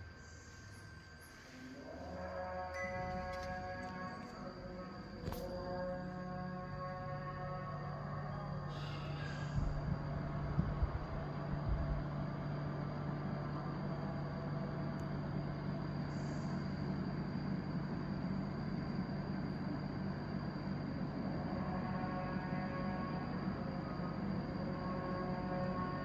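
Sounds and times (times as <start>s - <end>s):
air conditioner fan rushing: 8.8s - 21.0s.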